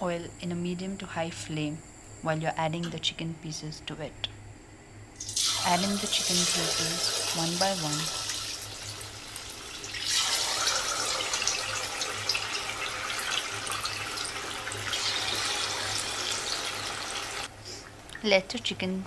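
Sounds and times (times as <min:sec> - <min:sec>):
chicken sizzling in hot oil: 0:05.2 - 0:17.5.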